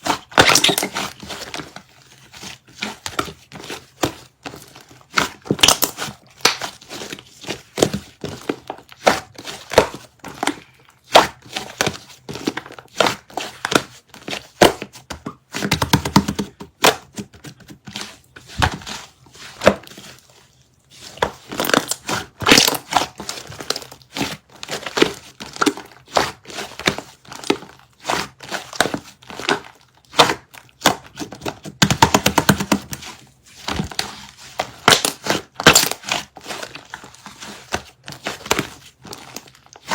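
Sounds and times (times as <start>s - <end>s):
slime squishing and popping: 0.1s - 1.3s, 5.2s - 6.8s, 21.2s - 27.6s, 34.7s - 36.4s.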